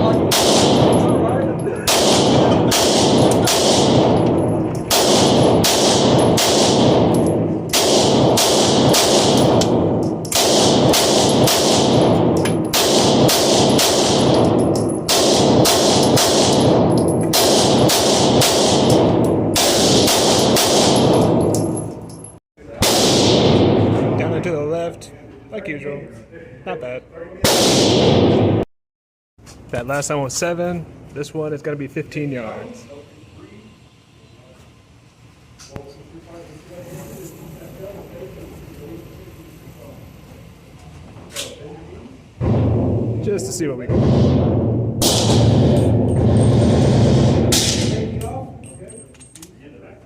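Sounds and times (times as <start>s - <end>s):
pistol shots with echo: 0.0s - 21.6s, 22.7s - 24.4s, 27.4s - 28.6s, 43.9s - 48.2s.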